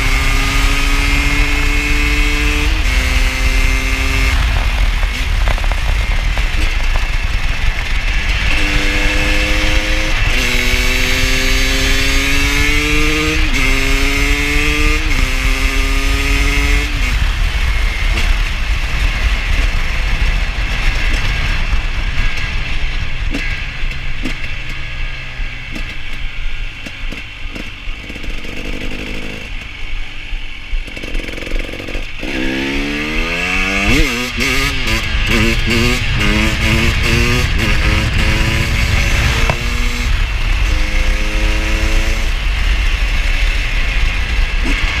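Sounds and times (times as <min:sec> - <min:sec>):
motorcycle engine revving: 0:00.0 - 0:45.0.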